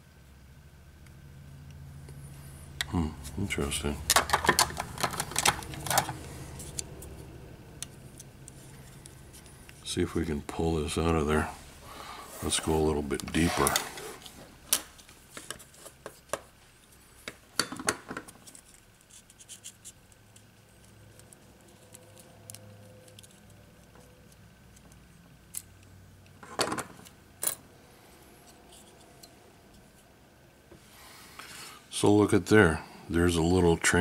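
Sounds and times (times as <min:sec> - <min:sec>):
plastic parts clicking and scraping: 0:04.1 - 0:07.1, 0:13.1 - 0:25.7.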